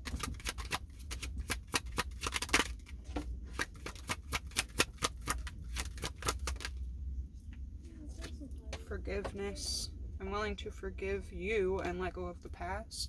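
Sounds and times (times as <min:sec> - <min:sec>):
cards being shuffled: 0:00.0 - 0:06.8
steady low hum: 0:00.0 - 0:13.0.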